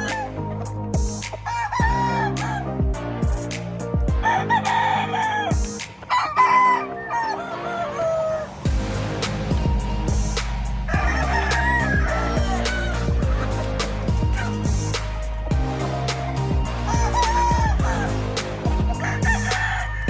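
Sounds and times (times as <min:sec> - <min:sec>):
roosters crowing: 0:00.0 - 0:00.4, 0:01.4 - 0:02.7, 0:04.2 - 0:08.7, 0:10.9 - 0:14.6, 0:16.4 - 0:20.0
music with deep bass beat: 0:00.0 - 0:06.0, 0:08.7 - 0:20.0.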